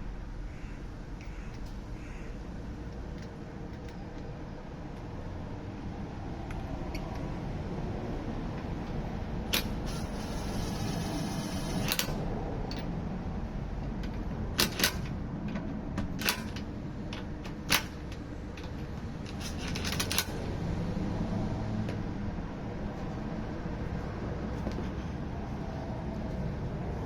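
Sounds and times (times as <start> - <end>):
steady low hum: 0.0 - 27.0
sharp clicks and knocks: 13.8 - 20.4.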